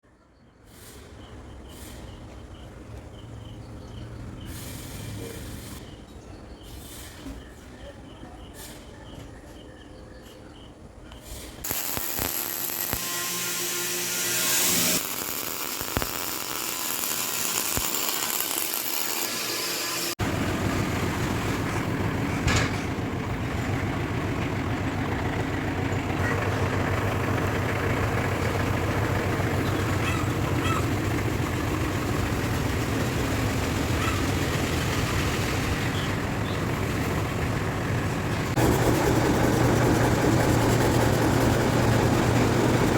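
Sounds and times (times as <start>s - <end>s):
arc welding crackling hiss: 11.3s - 20.2s.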